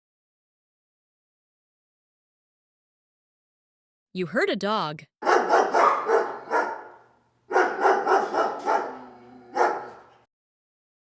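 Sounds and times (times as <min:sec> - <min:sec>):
dog barking: 0:05.2 - 0:10.3.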